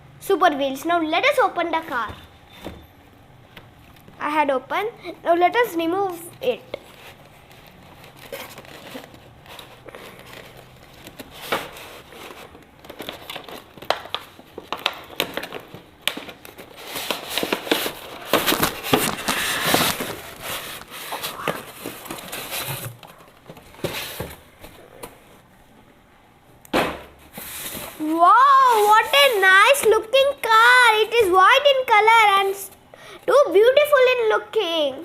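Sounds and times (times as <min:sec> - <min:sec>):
packaging crinkling and rustling: 0:06.7 - 0:25.4.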